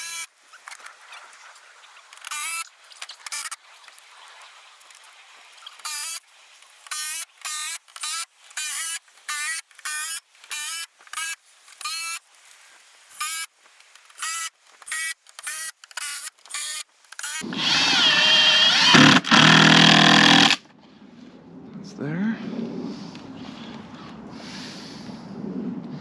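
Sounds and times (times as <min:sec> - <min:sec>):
cordless drill driving screws: 0:14.1 - 0:20.6.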